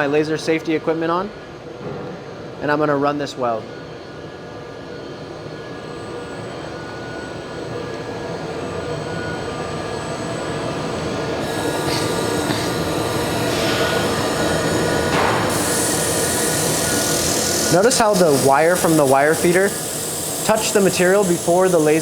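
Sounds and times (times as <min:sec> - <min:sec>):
machine hum with whining tones: 0:03.3 - 0:22.0
welding hiss: 0:11.4 - 0:22.0.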